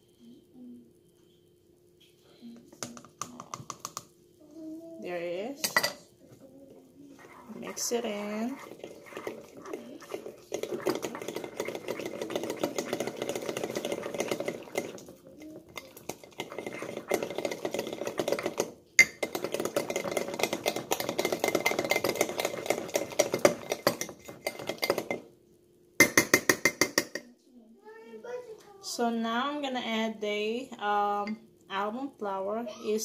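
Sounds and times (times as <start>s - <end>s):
utensil clinking against ceramic mug: 7.2s - 25.2s.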